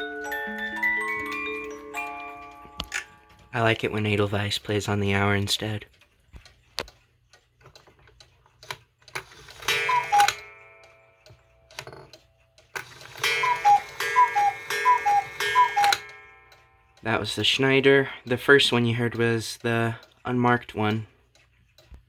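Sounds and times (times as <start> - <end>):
clocks ticking: 0.0 - 22.0
cuckoo clock calls: 9.1 - 11.9, 12.8 - 21.0.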